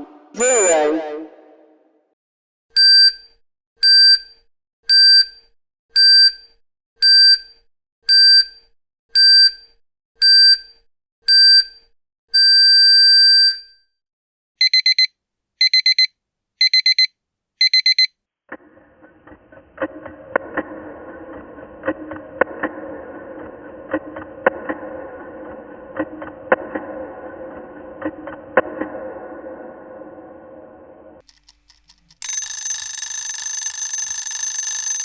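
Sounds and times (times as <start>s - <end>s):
countdown timer beeping: 0.4s - 0.8s, 32.2s - 35.0s
electronic alarm rapid beeps: 0.4s - 0.8s, 14.6s - 18.1s, 32.2s - 35.0s
noisy sound with irregular clicks: 31.2s - 35.0s.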